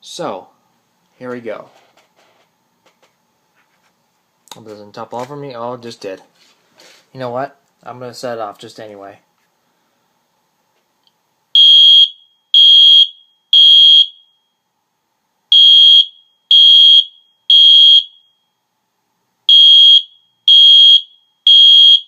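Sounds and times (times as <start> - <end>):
fire alarm horn blasts: 11.6 - 14.6, 15.5 - 18.6, 19.5 - 22.0.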